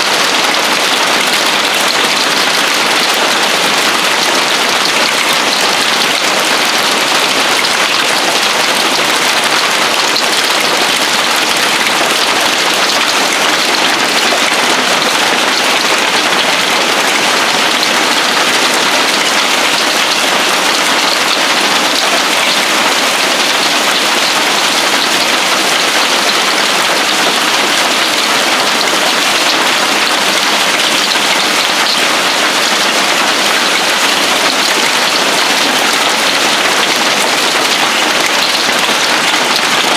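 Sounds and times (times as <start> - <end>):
heavy hail pelting a roof: 0.0 - 39.9.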